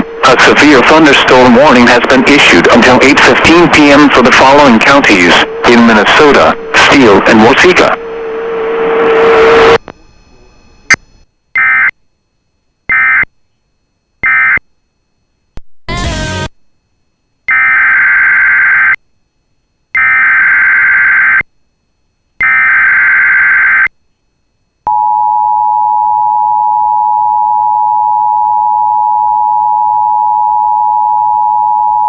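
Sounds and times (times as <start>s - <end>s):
digital data tone bursts: 0.0s - 7.9s
steady alert tone: 15.9s - 16.5s.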